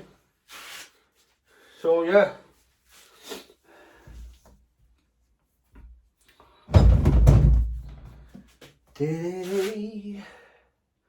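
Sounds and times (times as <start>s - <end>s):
heavy thump with clatter: 6.7s - 8.2s.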